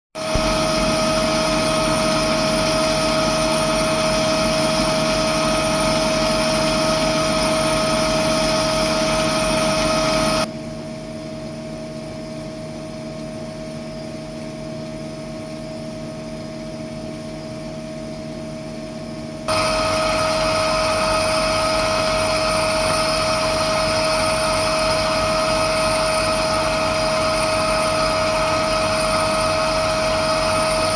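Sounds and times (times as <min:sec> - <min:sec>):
laser engraver whirring: 0:00.2 - 0:10.5, 0:19.5 - 0:30.9.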